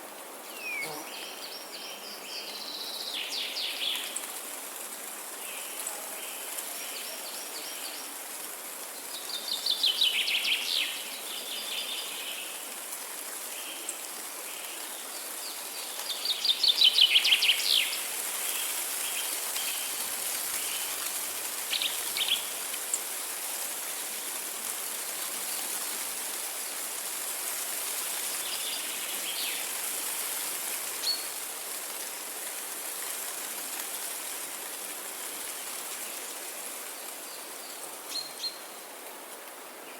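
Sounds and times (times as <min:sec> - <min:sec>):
bird chirps: 0:00.5 - 0:01.1
songbird trilling: 0:00.5 - 0:01.2.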